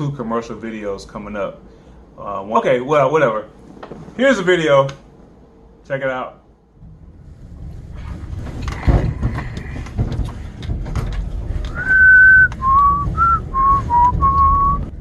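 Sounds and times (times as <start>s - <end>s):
rumbling handling noise: 6.6s - 15.0s
person whistling: 11.7s - 14.9s.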